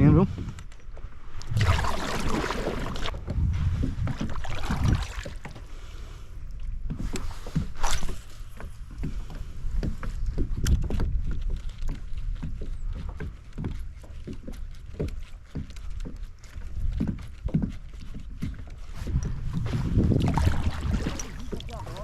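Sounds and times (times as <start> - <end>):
water splashes: 1.3 - 6.7, 19.5 - 22.0
low rumble: 2.7 - 5.1.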